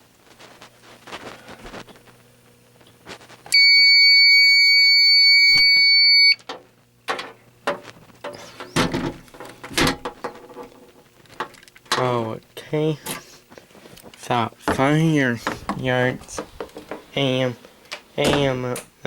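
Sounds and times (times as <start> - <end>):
high-pitched alarm beep: 3.5 - 6.4
handling clicks and knocks: 6.4 - 12.2, 13.9 - 17.2.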